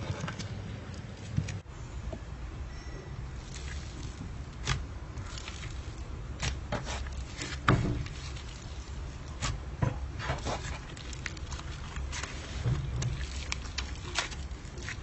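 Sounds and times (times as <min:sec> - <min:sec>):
slime squishing: 0:03.4 - 0:15.0.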